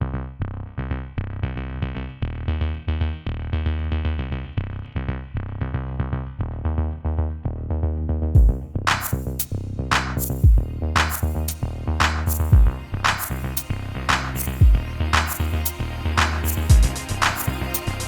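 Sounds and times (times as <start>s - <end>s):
synthesizer line over bass: 0.0s - 18.0s
drum-machine beat: 8.4s - 18.0s.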